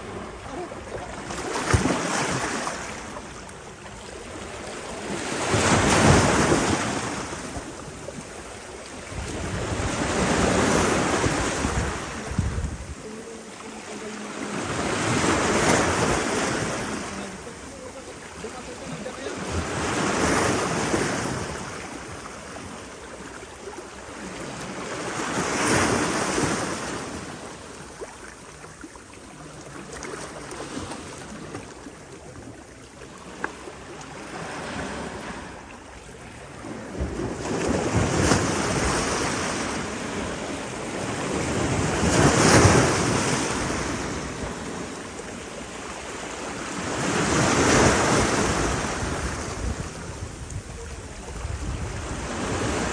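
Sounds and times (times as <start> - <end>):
sea waves breaking: 0.0 - 52.9.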